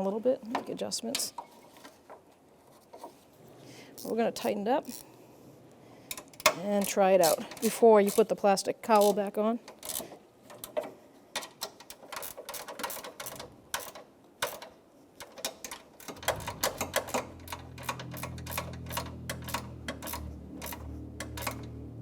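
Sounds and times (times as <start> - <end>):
ratchet wrench clicking: 9.8 - 10.0, 11.4 - 21.7
low steady hum: 16.0 - 22.0.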